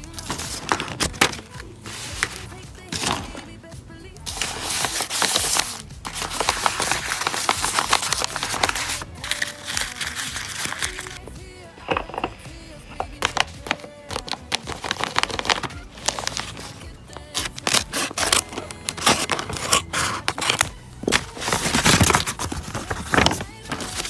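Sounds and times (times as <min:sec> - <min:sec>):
packaging crinkling and rustling: 0:04.3 - 0:11.2, 0:11.9 - 0:24.0.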